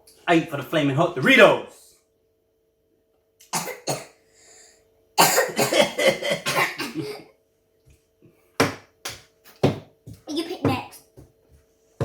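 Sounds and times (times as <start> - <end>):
person coughing: 3.6 - 4.2, 5.2 - 7.4.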